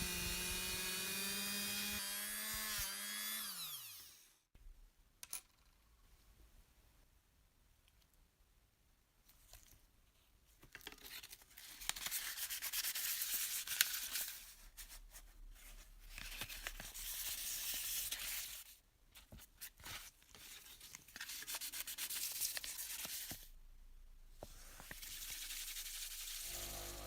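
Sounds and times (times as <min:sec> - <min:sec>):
hand sanding scratchy strokes: 0:24.9 - 0:27.0.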